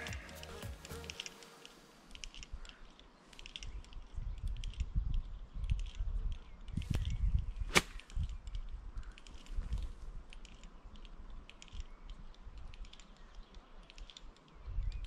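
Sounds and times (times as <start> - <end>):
wind on microphone: 3.6 - 10.3, 14.6 - 15.0.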